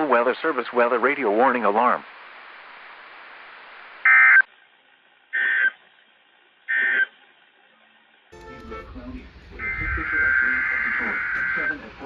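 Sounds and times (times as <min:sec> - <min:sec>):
radio broadcast hiss: 0:00.0 - 0:04.4, 0:06.7 - 0:12.0
warbling digital data tones: 0:08.7 - 0:12.0.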